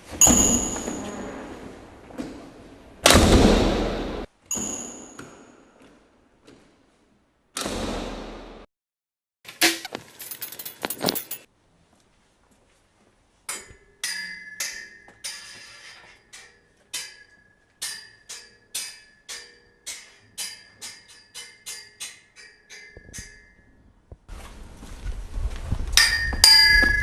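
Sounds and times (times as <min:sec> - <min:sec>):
bright ringing clinks: 0:00.2 - 0:01.2, 0:04.5 - 0:05.6, 0:26.0 - 0:27.0
crockery rattling: 0:10.0 - 0:11.5.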